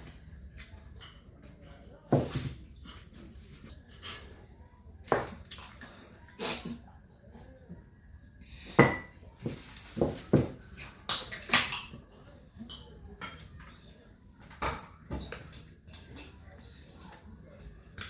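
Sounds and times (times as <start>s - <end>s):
dishes clinking on a table: 0.9s - 4.4s, 8.6s - 12.0s, 12.6s - 13.8s.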